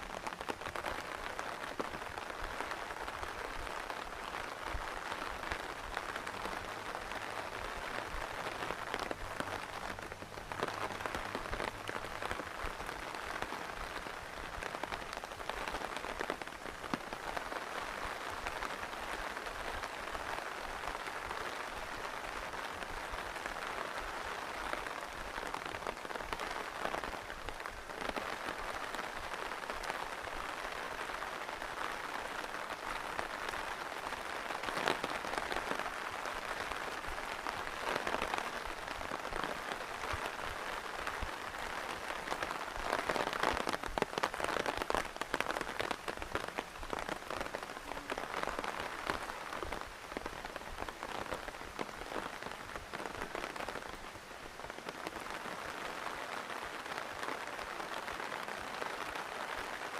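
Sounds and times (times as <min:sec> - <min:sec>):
heavy rain patter: 0:00.0 - 0:59.9.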